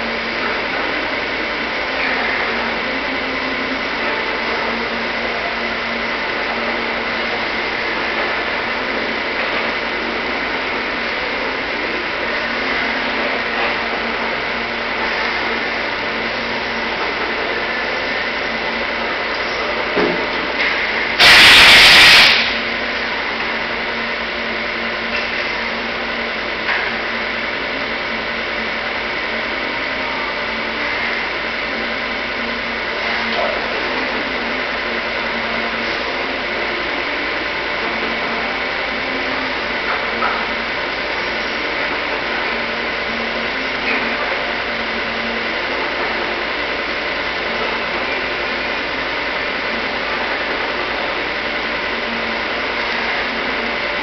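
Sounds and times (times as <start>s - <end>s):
milling machine motor hum: 0.0s - 54.0s
loud hiss: 21.1s - 22.7s.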